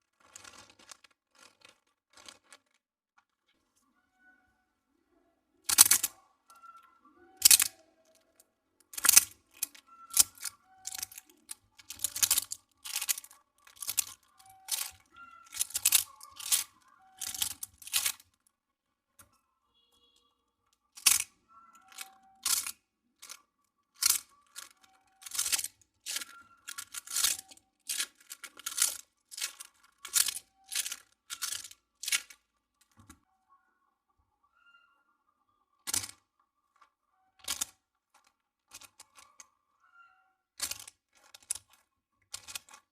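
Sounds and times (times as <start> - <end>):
crunchy toy crackling: 0.0 - 2.8, 5.7 - 6.1, 7.4 - 7.8, 8.9 - 18.3, 21.0 - 21.3, 21.9 - 23.4, 24.0 - 32.4.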